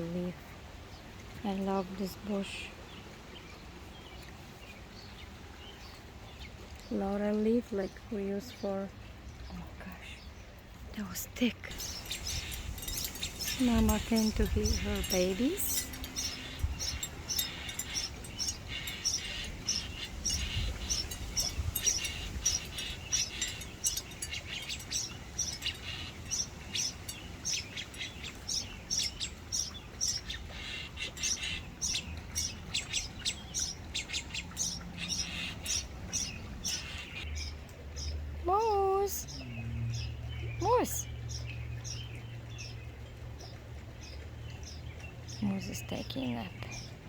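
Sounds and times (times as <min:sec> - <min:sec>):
young birds chirping: 0:09.4 - 0:47.0.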